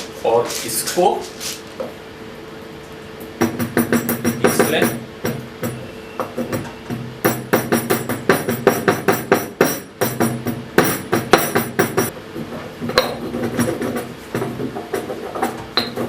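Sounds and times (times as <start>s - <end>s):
pestle pounding in a mortar: 3.4s - 12.1s, 12.8s - 16.0s.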